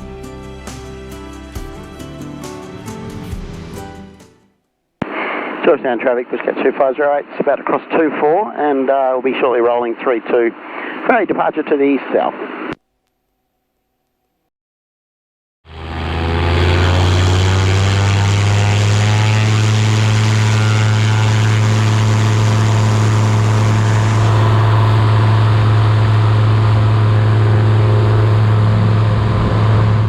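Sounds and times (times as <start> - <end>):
light aircraft engine and propeller: 15.7 - 30.0.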